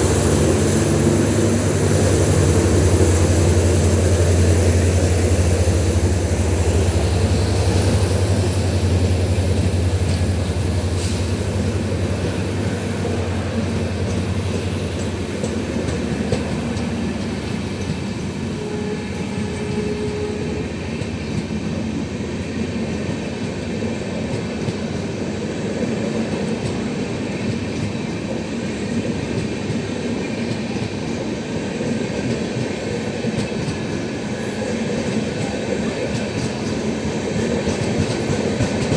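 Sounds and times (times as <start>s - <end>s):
diesel locomotive hum: 0.0s - 38.9s
train wheels clattering on rails: 0.0s - 38.9s.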